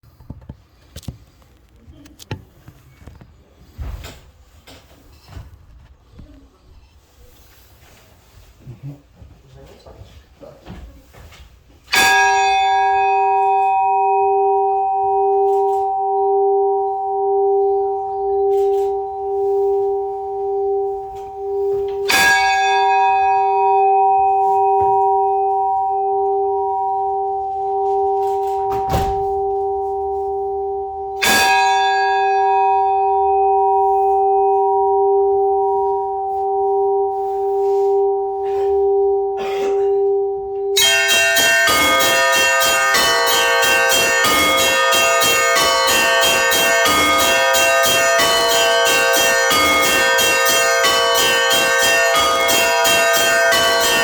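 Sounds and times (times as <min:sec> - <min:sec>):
large church bell strokes: 0:11.9 - 0:54.0
peal of smaller bells: 0:11.9 - 0:54.0.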